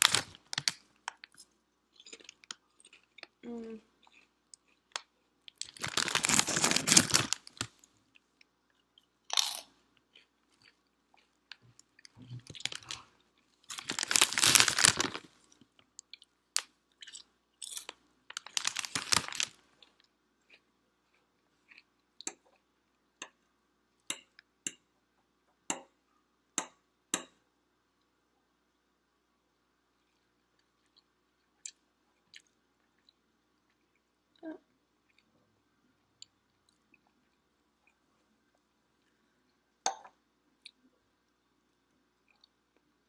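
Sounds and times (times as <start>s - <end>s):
potato chips crunching: 0.0s - 3.3s, 4.0s - 7.8s, 9.3s - 15.4s, 17.0s - 21.8s
quiet chewing: 0.6s - 6.7s, 7.4s - 14.2s, 18.4s - 23.4s, 29.9s - 39.6s.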